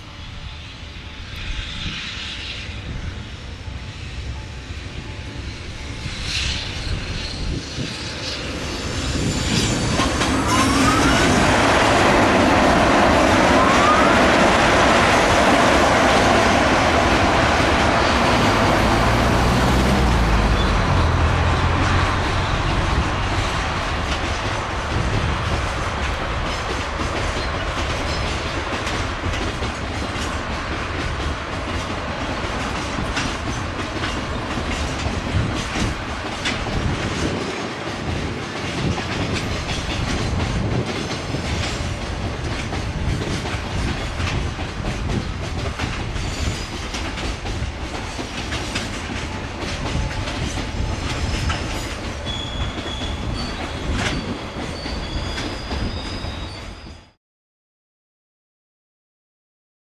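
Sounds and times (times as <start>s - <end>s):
train wheels clickety-clack: 0.0s - 57.2s
high wheel squeal: 3.8s - 11.7s, 13.5s - 14.5s, 18.0s - 23.8s, 50.8s - 57.2s.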